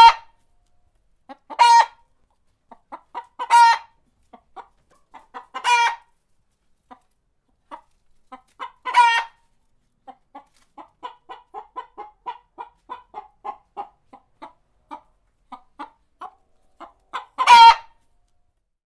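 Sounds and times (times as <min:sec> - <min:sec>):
chicken squawking: 0:00.0 - 0:00.3, 0:01.3 - 0:02.0, 0:02.9 - 0:03.9, 0:04.6 - 0:06.1, 0:08.6 - 0:09.4, 0:10.8 - 0:18.0
chicken clucking: 0:00.0 - 0:18.4.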